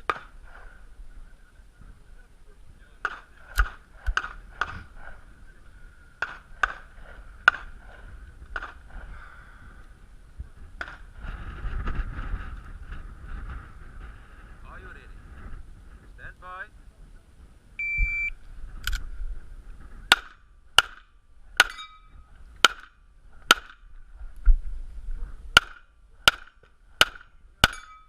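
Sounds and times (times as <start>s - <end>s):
gunshots: 3.0s - 5.2s, 6.2s - 9.0s.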